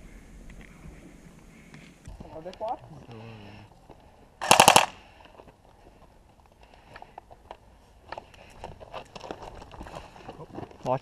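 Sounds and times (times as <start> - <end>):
airsoft gun rapid burst: 4.4 - 4.9
footsteps: 5.1 - 11.0.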